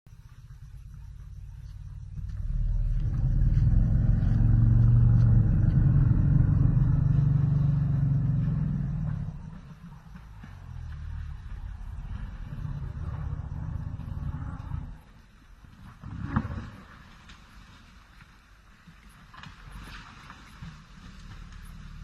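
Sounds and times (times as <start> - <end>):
elephant low growl: 0.9 - 17.3.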